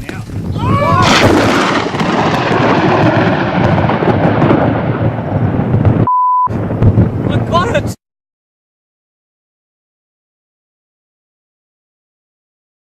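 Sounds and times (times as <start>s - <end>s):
loud rolling thunder: 0.3s - 8.0s
short steady beep: 6.1s - 6.5s.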